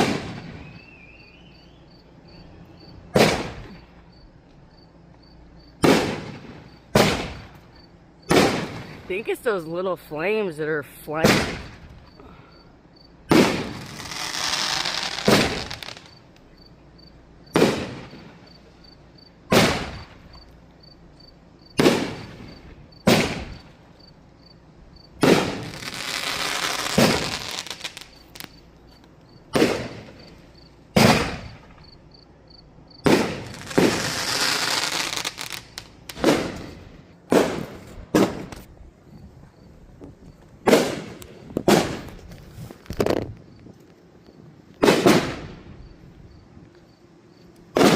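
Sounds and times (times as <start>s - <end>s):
firework crackling: 0.0s - 1.4s, 3.1s - 4.0s, 5.8s - 7.7s, 8.3s - 9.8s, 13.3s - 16.3s, 17.5s - 18.5s, 19.5s - 20.3s, 21.8s - 23.8s, 25.2s - 28.7s, 29.5s - 31.8s, 33.0s - 38.7s, 40.6s - 43.4s, 44.8s - 45.7s
firework shells bursting: 13.3s - 16.4s, 21.7s - 23.8s, 25.2s - 28.7s, 29.4s - 31.9s, 33.0s - 38.7s.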